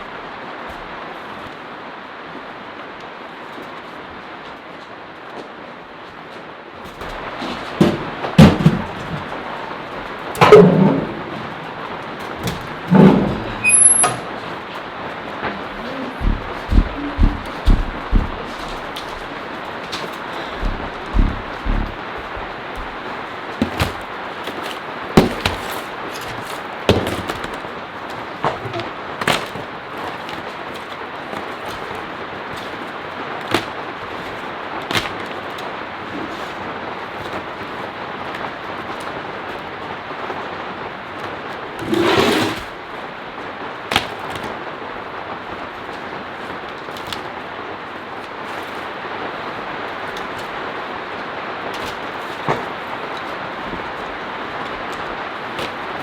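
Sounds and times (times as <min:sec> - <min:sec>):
heavy rain hissing: 0:00.0 - 0:56.0
sharp knocks: 0:07.4 - 0:09.4, 0:12.4 - 0:14.4, 0:15.6 - 0:19.4, 0:20.0 - 0:23.0.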